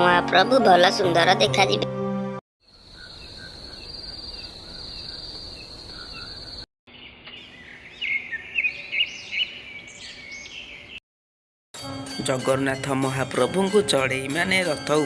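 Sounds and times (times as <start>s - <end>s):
birds chirping and twittering: 2.7s - 11.0s.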